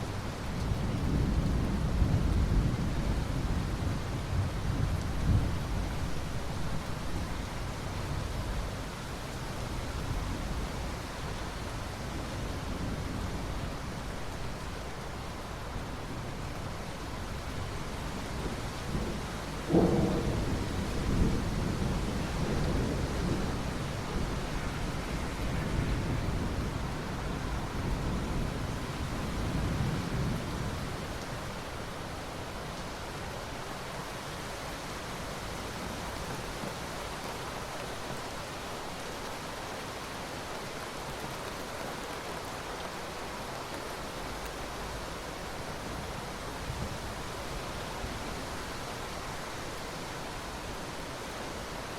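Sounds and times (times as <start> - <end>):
steady rain falling: 0.0 - 51.9
thunder rumbling: 18.4 - 31.0.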